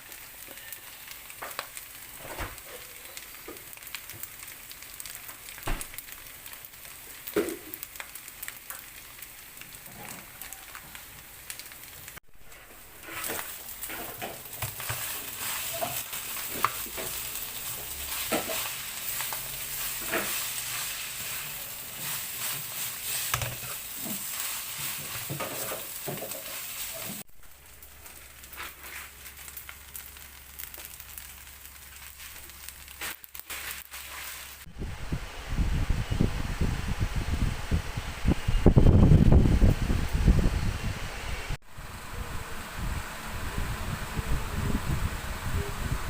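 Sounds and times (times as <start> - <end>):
rice sizzling in a hot pan: 0.0 - 34.7
spatula scraping and knocking: 19.9 - 27.2.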